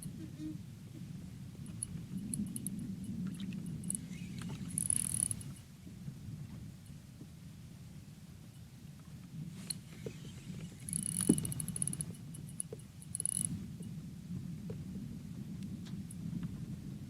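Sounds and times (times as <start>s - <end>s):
water and wind rumble: 0.0s - 17.0s
fishing reel clicking: 3.8s - 5.6s, 9.7s - 13.5s.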